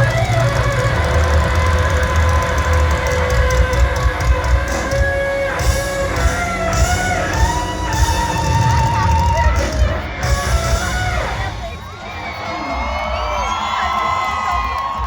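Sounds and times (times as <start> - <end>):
electric guitar: 0.0 - 12.1
heavy bass: 0.0 - 12.2
live rock band playing: 0.0 - 13.3.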